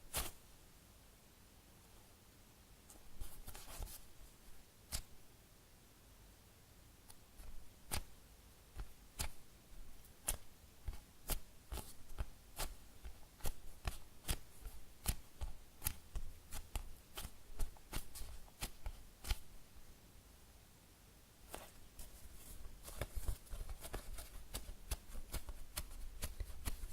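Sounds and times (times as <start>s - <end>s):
fingers tapping foam toy: 10.2s - 19.4s, 22.9s - 26.9s.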